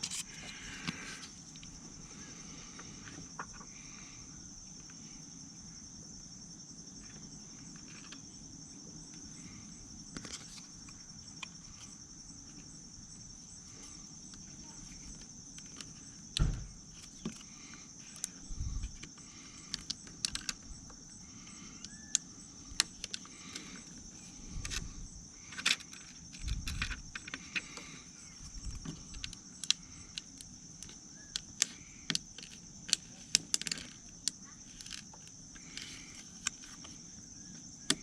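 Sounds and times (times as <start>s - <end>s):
small clicks and taps: 28.8s - 36.9s.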